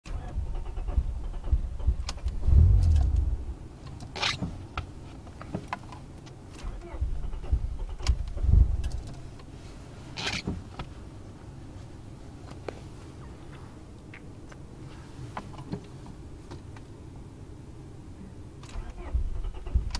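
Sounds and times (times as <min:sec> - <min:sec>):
engine cranking without starting: 0:00.1 - 0:04.4, 0:06.5 - 0:09.2, 0:18.6 - 0:19.9.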